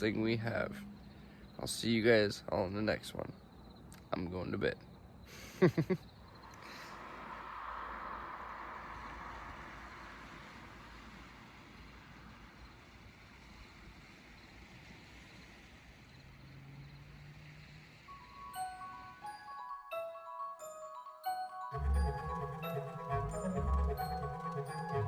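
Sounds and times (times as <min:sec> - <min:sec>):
faint rushing noise: 0:06.4 - 0:16.1.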